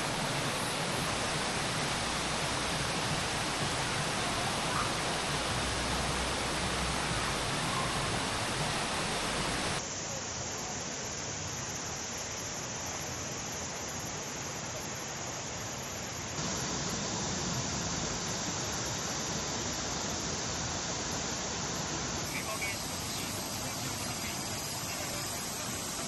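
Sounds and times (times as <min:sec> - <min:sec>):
stream water rushing: 0:00.0 - 0:09.8, 0:16.2 - 0:26.0.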